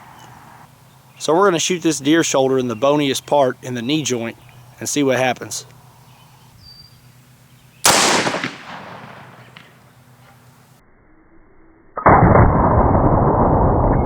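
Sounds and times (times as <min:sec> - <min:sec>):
revolver shot with echo: 0:07.9 - 0:10.0.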